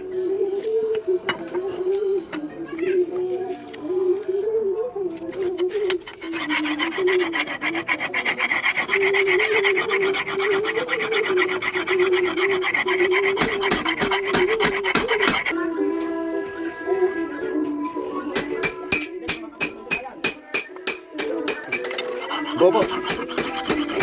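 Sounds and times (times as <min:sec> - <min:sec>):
file rasping on steel blade: 0:05.2 - 0:15.5, 0:21.5 - 0:24.0.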